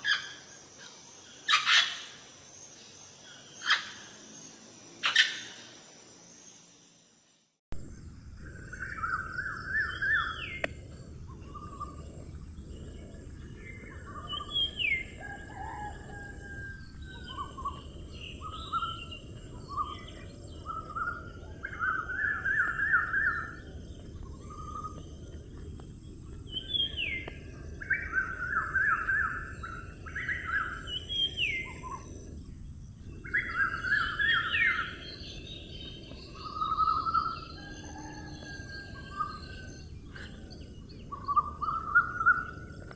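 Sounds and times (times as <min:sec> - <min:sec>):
steady high-pitched hiss: 0:00.0 - 0:42.9
parrots chattering and calling: 0:01.5 - 0:02.2.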